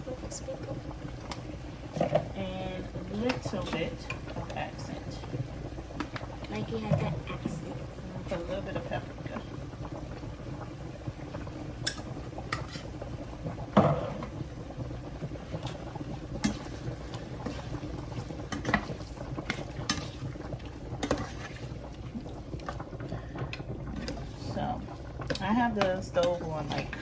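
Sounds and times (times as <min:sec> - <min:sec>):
food bubbling in a pan: 0:00.0 - 0:27.0
utensil scraping a pan: 0:12.5 - 0:13.0, 0:21.0 - 0:21.7.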